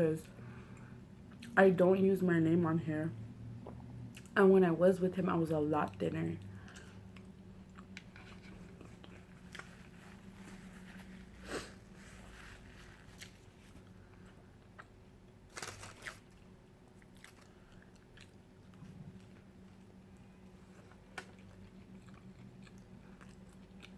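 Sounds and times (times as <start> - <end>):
faint steady hum: 0.0 - 23.9
chewing with crunches: 5.8 - 10.8, 12.6 - 23.9.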